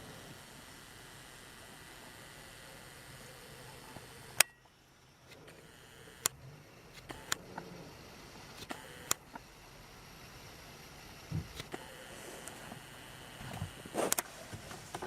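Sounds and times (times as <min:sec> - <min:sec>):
sharp clicks: 0:03.8 - 0:07.7, 0:08.5 - 0:09.5, 0:11.4 - 0:12.8.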